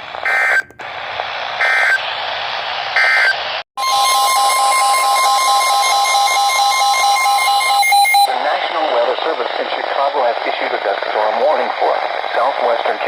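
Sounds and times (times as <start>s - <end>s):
pulsing beep: 3.0s - 8.3s
loud steady alert tone: 3.8s - 8.3s.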